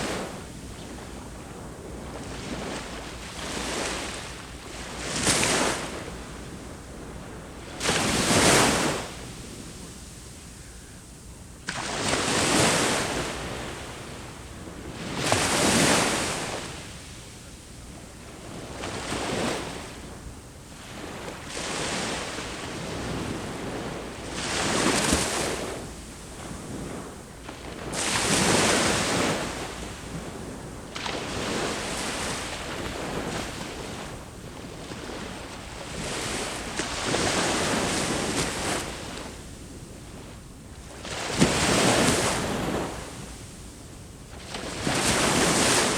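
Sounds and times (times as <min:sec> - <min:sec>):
ocean waves breaking on shore: 0:11.6 - 0:40.1, 0:40.7 - 0:45.9.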